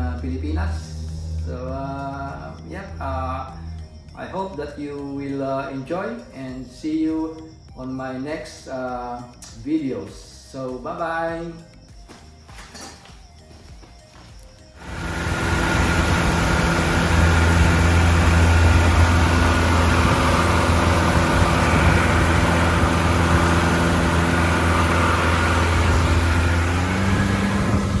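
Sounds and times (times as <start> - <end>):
loud machine drone: 0.0 - 4.3, 14.8 - 28.0.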